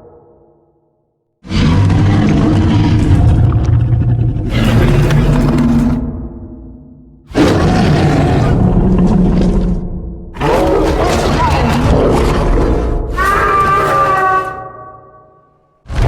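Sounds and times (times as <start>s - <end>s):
high steady creature cry: 13.1s - 15.2s.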